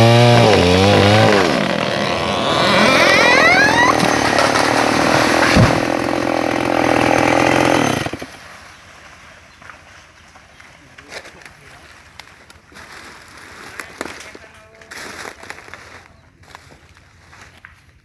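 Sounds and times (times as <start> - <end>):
chainsaw cutting tree trunk: 0.0 - 8.6.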